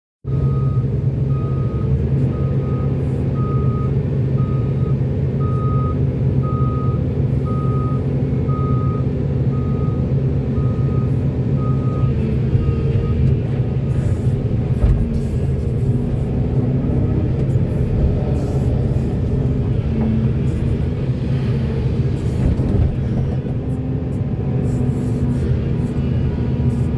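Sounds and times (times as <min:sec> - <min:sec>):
reversing alarm beeping: 0:00.3 - 0:16.1
heavy diesel machinery running: 0:00.3 - 0:26.9.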